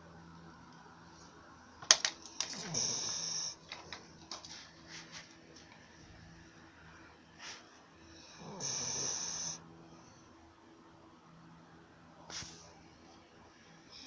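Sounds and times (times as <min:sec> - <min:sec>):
dog groaning: 0:02.5 - 0:03.7, 0:08.2 - 0:09.6
dog snuffling and snorting: 0:02.5 - 0:03.7, 0:08.4 - 0:09.6.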